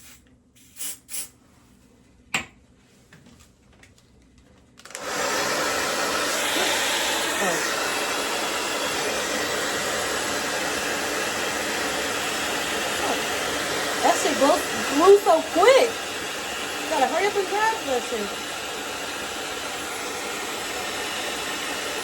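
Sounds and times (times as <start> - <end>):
spray can hissing: 0.0 - 1.3
hair dryer blowing: 4.8 - 22.0.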